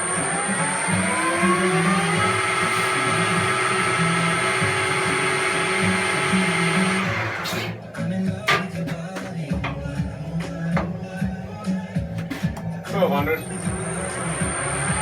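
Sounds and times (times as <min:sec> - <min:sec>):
lathe motor running with whine: 0:00.0 - 0:07.8, 0:13.3 - 0:15.0.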